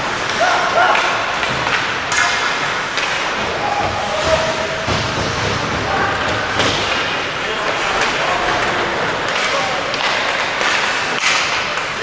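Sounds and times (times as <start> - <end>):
sharp knocks: 3.8 - 7.1.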